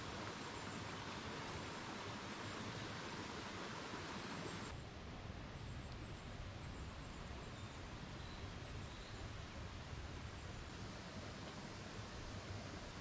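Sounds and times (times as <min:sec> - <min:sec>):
faint outdoor background hiss: 0:00.0 - 0:13.0.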